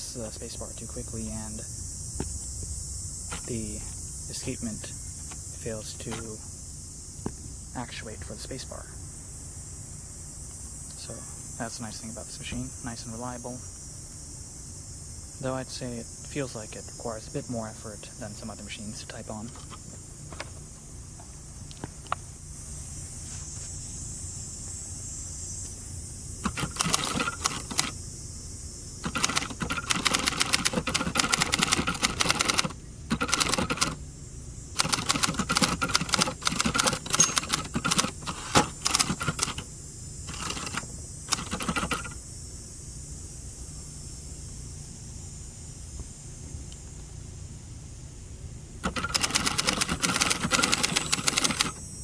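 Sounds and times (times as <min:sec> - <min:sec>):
manual typewriter typing: 0:26.4 - 0:28.0, 0:29.0 - 0:34.0, 0:34.8 - 0:39.7, 0:40.3 - 0:42.2, 0:48.8 - 0:51.8.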